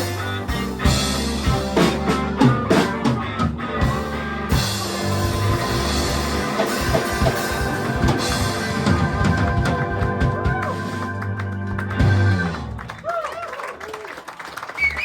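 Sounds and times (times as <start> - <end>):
live blues band playing: 0.0 - 13.0
drum hits: 4.7 - 11.3.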